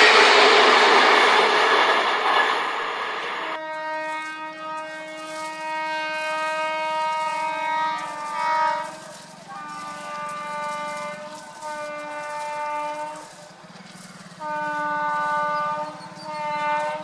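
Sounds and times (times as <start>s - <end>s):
train rushing: 0.0s - 17.0s
train horn held note: 3.5s - 13.4s, 14.2s - 17.0s.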